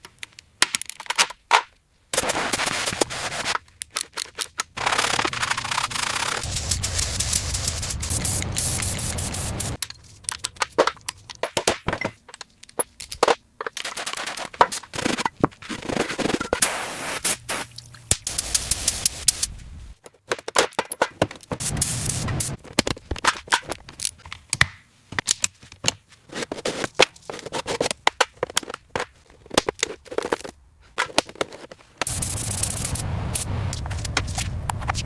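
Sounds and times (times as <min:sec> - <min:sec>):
steady hiss: 0:04.8 - 0:09.8, 0:16.6 - 0:20.0, 0:21.6 - 0:22.6, 0:32.0 - 0:35.0.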